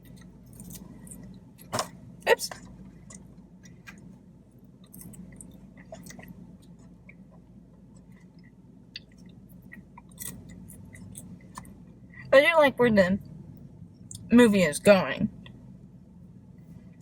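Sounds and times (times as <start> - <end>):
person chewing food: 0.0 - 1.7, 4.8 - 11.8.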